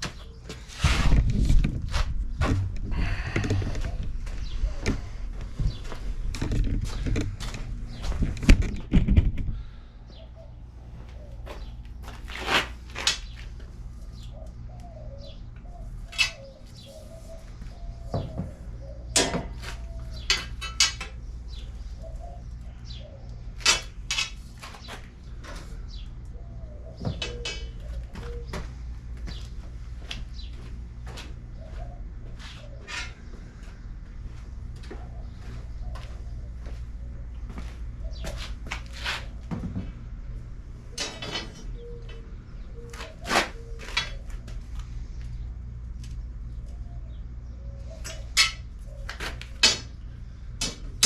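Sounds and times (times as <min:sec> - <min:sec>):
steady low hum: 0:00.0 - 0:51.0
bird cooing: 0:02.9 - 0:05.3, 0:09.6 - 0:11.7, 0:14.2 - 0:20.4, 0:21.6 - 0:23.3, 0:26.3 - 0:28.7, 0:31.6 - 0:33.3, 0:34.9 - 0:38.4, 0:40.9 - 0:44.4, 0:46.6 - 0:49.2
metal clanks on steel tubing: 0:20.3 - 0:21.2, 0:48.0 - 0:48.6.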